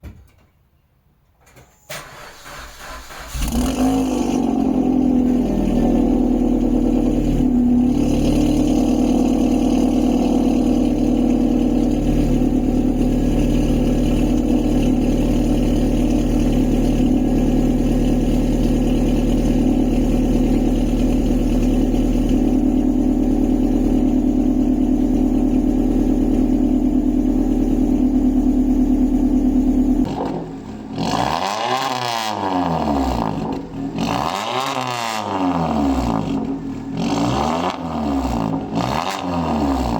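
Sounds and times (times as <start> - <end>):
car engine idling and revving: 2.3 - 39.9.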